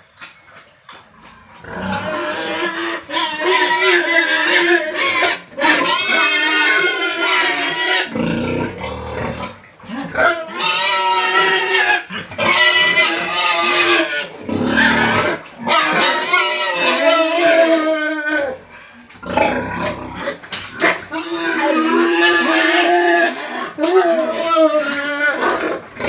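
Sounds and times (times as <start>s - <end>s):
pigs grunting: 0.0s - 26.0s
pigs squealing: 1.5s - 26.0s.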